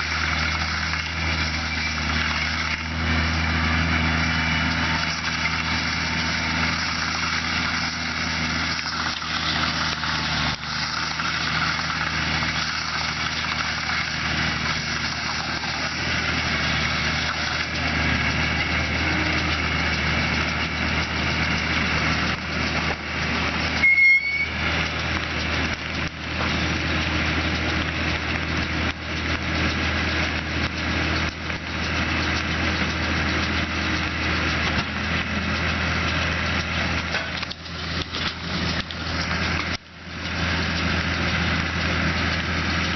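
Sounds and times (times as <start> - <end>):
baler mechanical working noise: 0.0 - 42.9
tractor diesel engine running: 0.0 - 42.9
sharp high squeak: 23.8 - 24.7.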